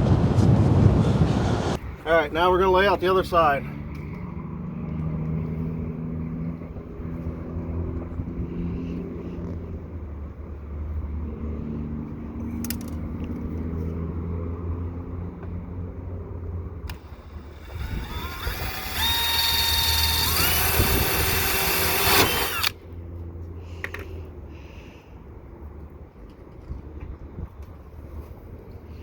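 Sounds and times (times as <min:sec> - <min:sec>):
power drill whining: 0:16.9 - 0:22.8
steady low hum: 0:16.9 - 0:22.8.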